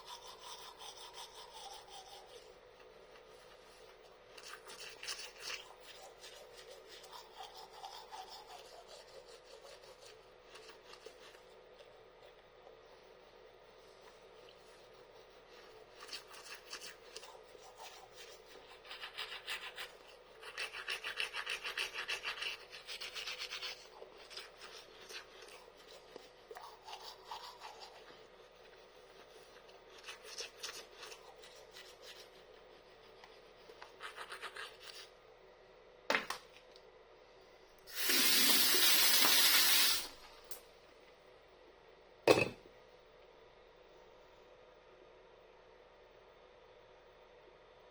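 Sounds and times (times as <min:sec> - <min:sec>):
toothbrush scrubbing teeth: 0:00.0 - 0:35.2.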